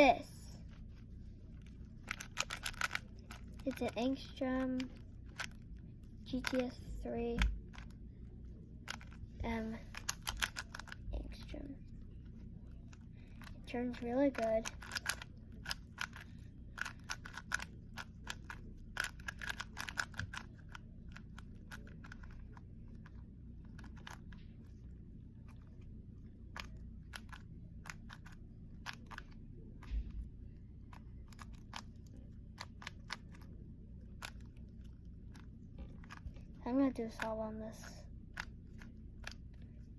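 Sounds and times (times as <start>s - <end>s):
puzzle cube plastic clicks: 1.6s - 5.7s, 6.3s - 6.8s, 9.8s - 11.0s, 12.8s - 24.8s, 26.5s - 29.9s, 30.9s - 37.3s.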